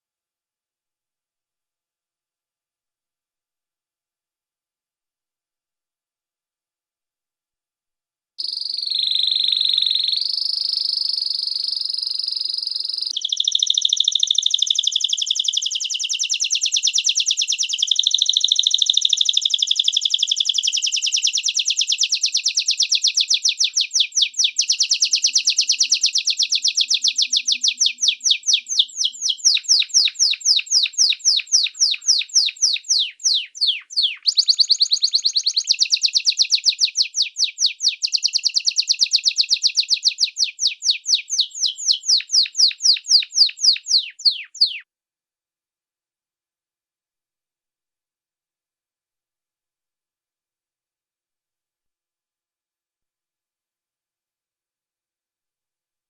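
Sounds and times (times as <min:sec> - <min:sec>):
canary singing: 0:08.4 - 0:44.8.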